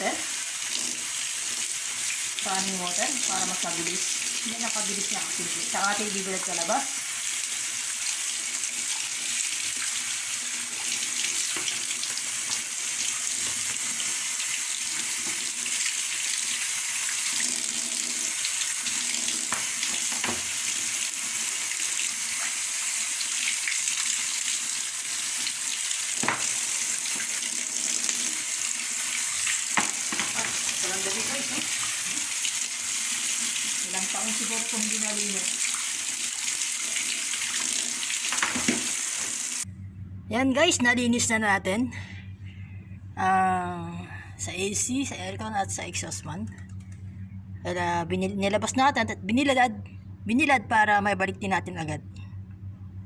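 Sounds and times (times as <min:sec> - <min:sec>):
water spraying and splashing: 0:00.0 - 0:39.7.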